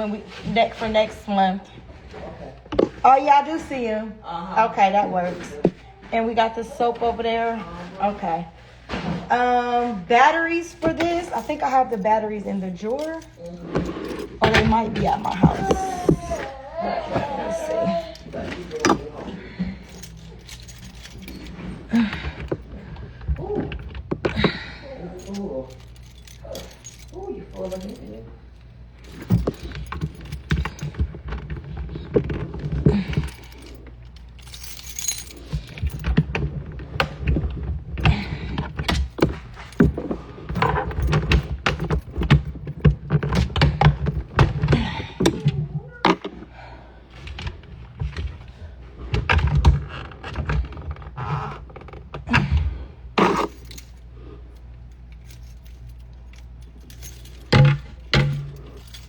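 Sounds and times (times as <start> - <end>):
rustling objects: 0.0 - 59.0
clinking and clicking objects: 10.5 - 46.5, 53.2 - 59.0.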